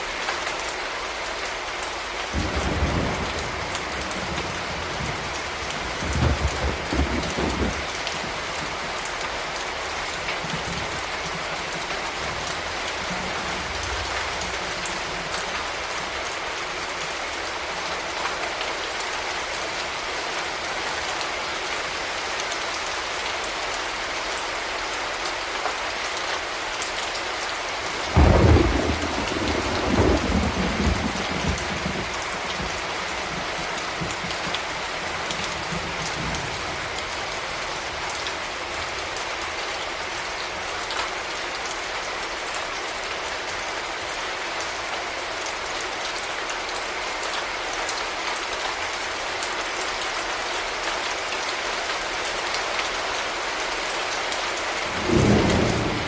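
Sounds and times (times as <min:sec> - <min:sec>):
steady rain falling: 0:00.0 - 0:56.0
thunder crack and rumble: 0:02.3 - 0:08.9, 0:28.0 - 0:36.9, 0:54.9 - 0:56.0.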